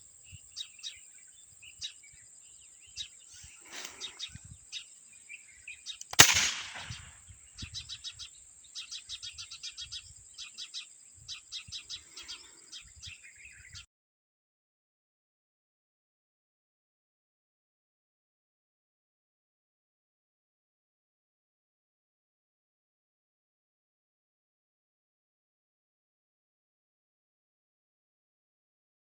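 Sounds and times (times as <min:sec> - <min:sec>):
bird chirps: 0:00.2 - 0:13.8
sharp crack: 0:06.0 - 0:07.2.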